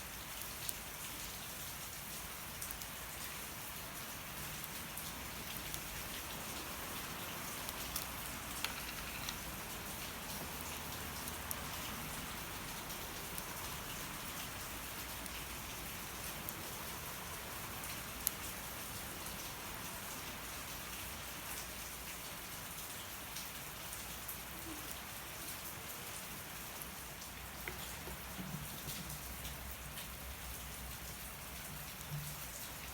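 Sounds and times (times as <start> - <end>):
steady rain: 0.0 - 32.9
wood fire crackling: 0.1 - 19.9.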